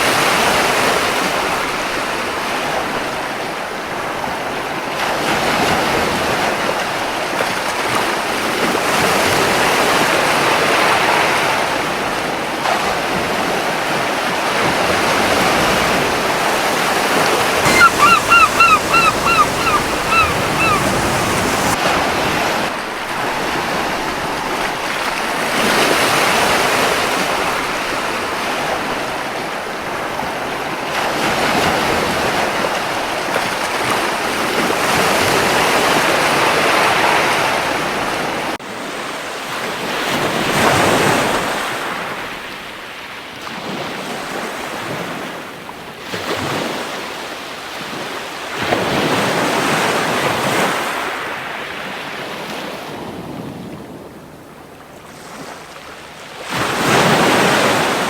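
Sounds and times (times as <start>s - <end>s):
surf washing onto beach: 14.6s - 22.0s
wind on microphone: 16.3s - 21.8s
gull calling: 16.6s - 21.8s.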